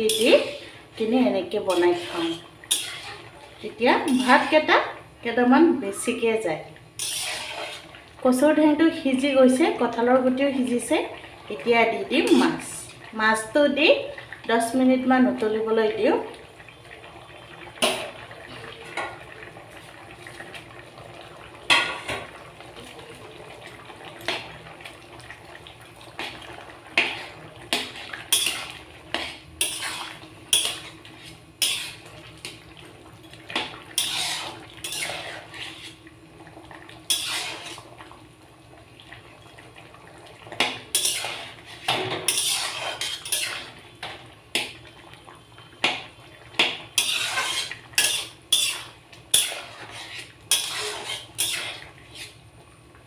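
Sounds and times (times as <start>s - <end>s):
faint simmering: 0.0s - 53.0s
metal spoon scraping a pan: 1.6s - 4.7s, 7.0s - 8.0s, 27.0s - 32.6s, 33.6s - 36.0s, 37.1s - 37.9s, 40.6s - 44.8s, 46.6s - 52.4s.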